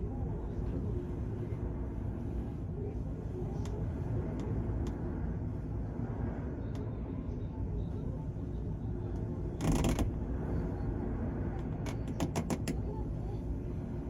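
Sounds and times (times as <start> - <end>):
ship engine and sea drone: 0.0 - 14.0.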